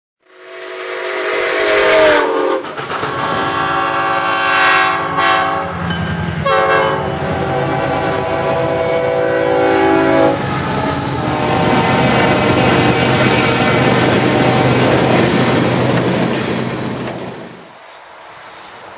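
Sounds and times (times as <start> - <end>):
locomotive air horn blasts: 0.2 - 15.1
train rumbling past on rails: 0.3 - 18.9.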